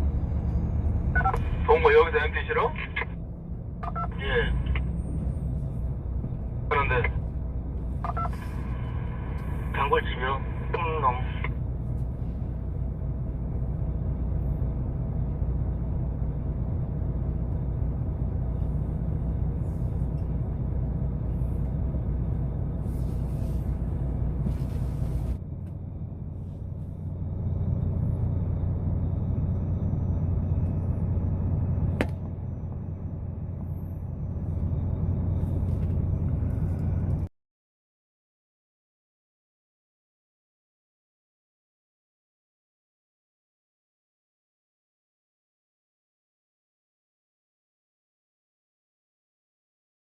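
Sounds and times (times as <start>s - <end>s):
diesel truck engine rumbling: 0.0s - 37.3s.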